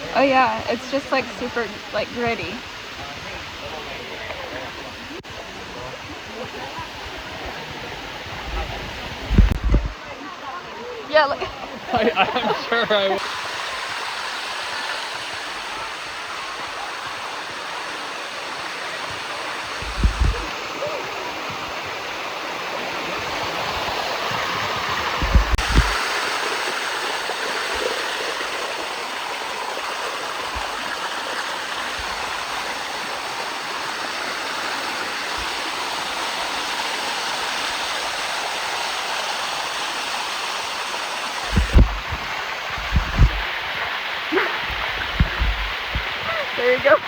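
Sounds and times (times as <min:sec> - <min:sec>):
waterfall rushing: 0:00.0 - 0:47.0
short low bumps: 0:41.4 - 0:43.6, 0:44.3 - 0:46.9.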